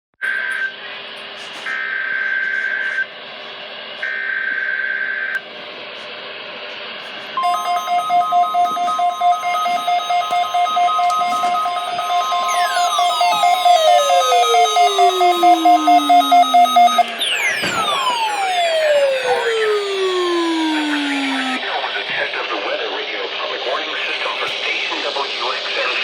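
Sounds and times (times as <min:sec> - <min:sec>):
receivers beeping rapidly: 0:07.4 - 0:21.6
steady warning alarm tone: 0:07.4 - 0:21.6
tone sweeping down in pitch: 0:07.4 - 0:21.6.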